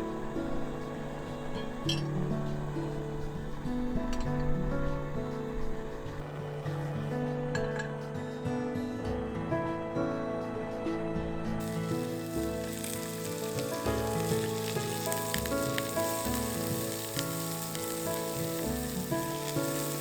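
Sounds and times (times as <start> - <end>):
soft background music: 0.0 - 20.0
food sizzling in hot oil: 11.6 - 20.0.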